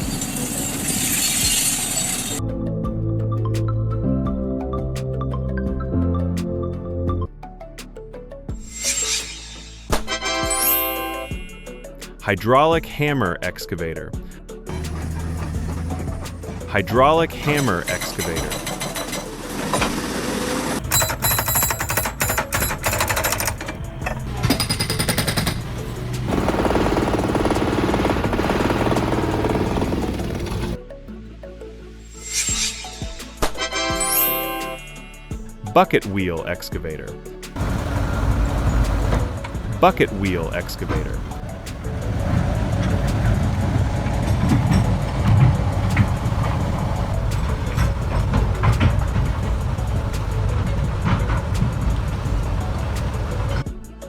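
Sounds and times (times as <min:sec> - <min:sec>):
metallic clanks and knocks: 0:14.7 - 0:26.3, 0:37.6 - 0:53.7
heavy machinery rumble: 0:14.7 - 0:30.8, 0:37.6 - 0:53.7
hydraulic hammer pounding: 0:14.7 - 0:30.8, 0:37.6 - 0:53.8.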